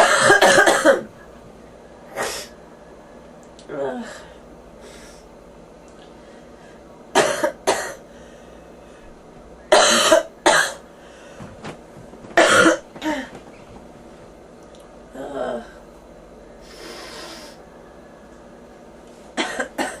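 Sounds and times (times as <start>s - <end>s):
person coughing: 0.0s - 1.1s, 7.2s - 8.0s, 9.7s - 10.8s, 12.4s - 13.4s, 19.4s - 20.0s.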